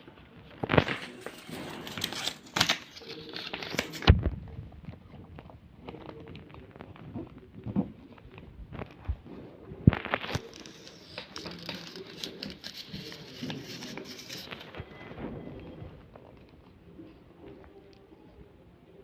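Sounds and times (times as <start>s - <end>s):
paper rustling and crinkling: 0.0s - 9.3s, 9.9s - 15.5s.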